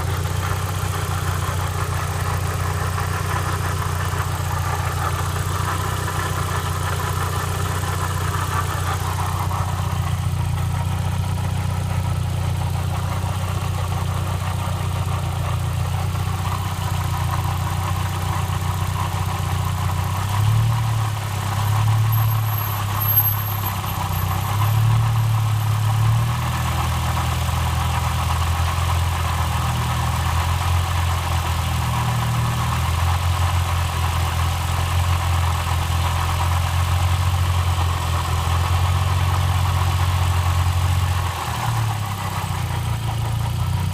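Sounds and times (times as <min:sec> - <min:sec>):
car engine idling: 0:00.0 - 0:43.9.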